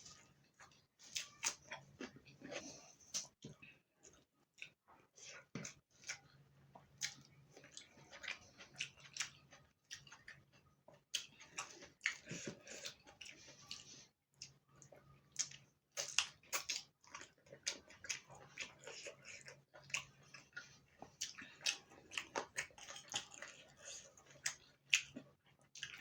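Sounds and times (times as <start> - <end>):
wet chewing and lip smacks: 4.0 - 26.0.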